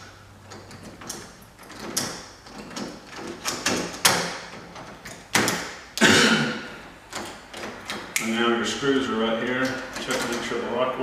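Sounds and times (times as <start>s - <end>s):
metallic clicks and knocks of door lock: 0.5s - 5.8s, 7.1s - 8.2s.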